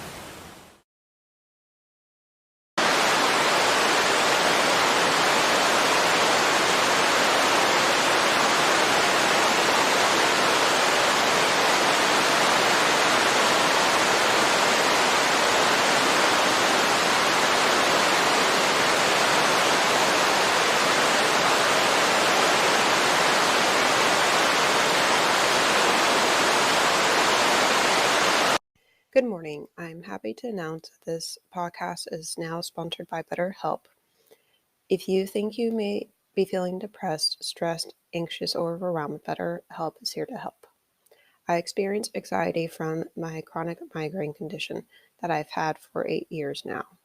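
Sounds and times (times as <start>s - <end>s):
waterfall rushing: 2.8s - 28.6s.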